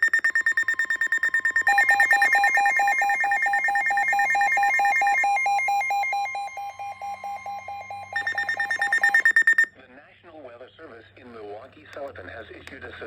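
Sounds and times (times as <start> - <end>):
emergency alert steady high tone: 0.0 - 9.7
fast electronic beeping: 0.0 - 9.7.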